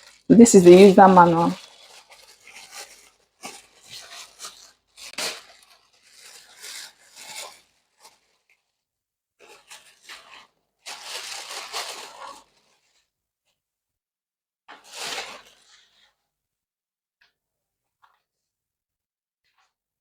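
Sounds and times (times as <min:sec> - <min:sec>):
packaging rustling and rubbing: 0:04.1 - 0:07.6.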